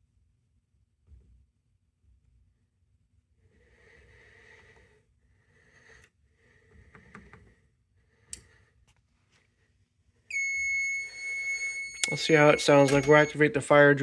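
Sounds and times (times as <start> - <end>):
faint rustling handling noise: 8.8 - 10.3.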